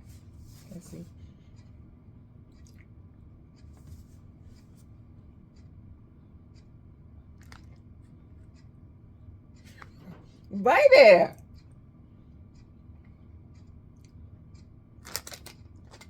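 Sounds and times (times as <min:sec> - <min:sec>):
room hum: 0:00.0 - 0:16.0
faint chewing of cookie: 0:02.5 - 0:04.7, 0:07.4 - 0:08.8.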